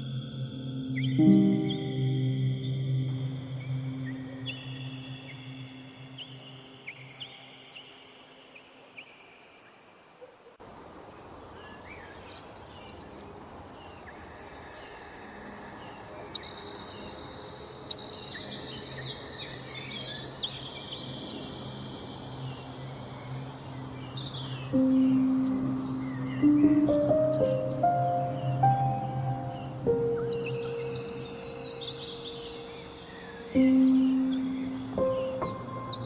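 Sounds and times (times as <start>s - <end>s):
outdoor background hiss: 0.0s - 36.0s
small birds chirping: 11.0s - 36.0s.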